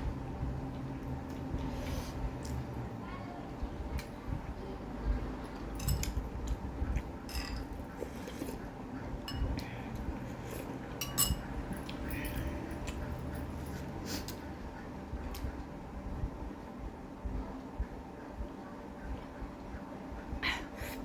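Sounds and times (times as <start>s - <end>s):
cutlery clinking on a dish: 7.3s - 7.8s, 11.0s - 12.5s.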